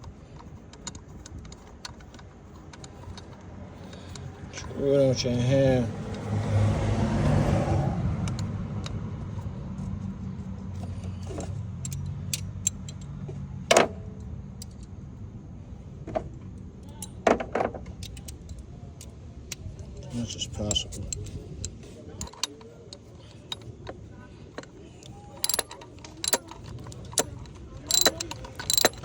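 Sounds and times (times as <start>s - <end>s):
metallic clinks of tools and bolts: 10.7s - 14.9s, 17.8s - 29.0s.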